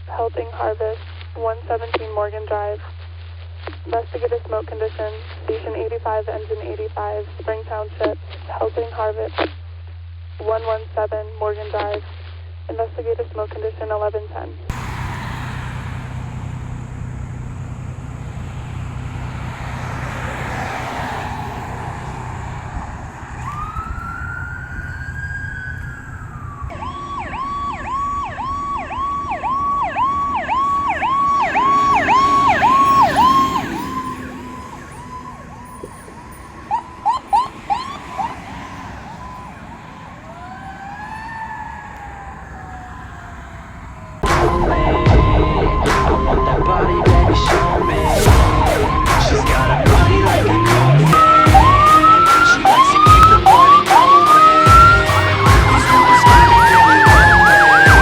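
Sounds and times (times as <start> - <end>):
engine rumble: 14.7 - 58.0
fire engine siren: 14.7 - 58.0.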